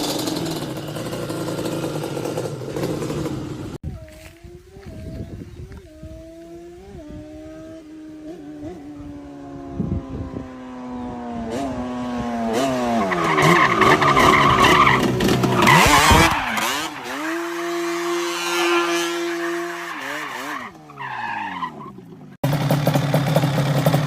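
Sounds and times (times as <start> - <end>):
two-stroke engine revving: 0.0 - 3.8, 6.0 - 21.0, 21.7 - 24.0.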